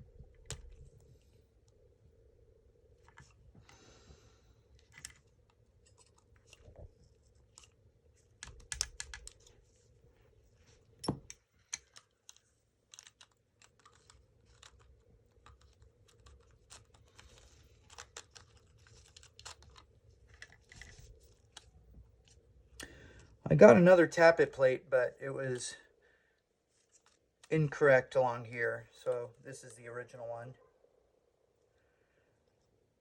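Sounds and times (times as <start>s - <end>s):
small parts clicking and rattling: 4.8s - 9.6s, 11.0s - 22.4s.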